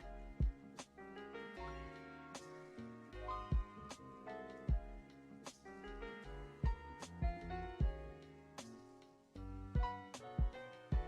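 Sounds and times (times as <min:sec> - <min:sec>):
lo-fi hip hop music: 0:00.0 - 0:01.0, 0:01.6 - 0:11.0.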